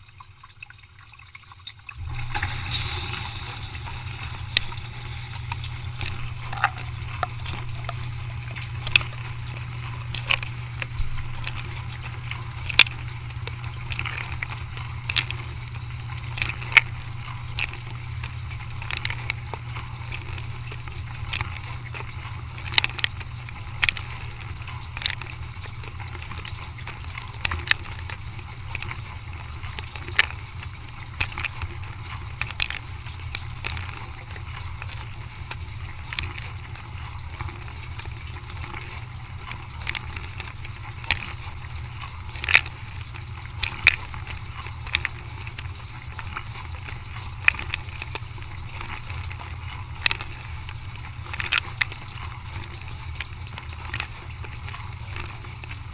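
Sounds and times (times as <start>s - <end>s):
dishwasher pump humming: 0.0s - 55.9s
water spraying against dishes: 2.0s - 22.0s.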